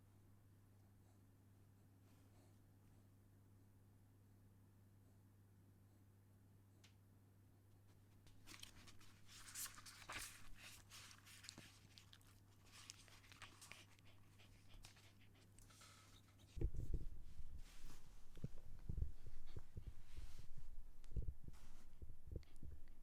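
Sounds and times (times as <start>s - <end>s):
dog rustling and clicking: 8.3s - 17.0s.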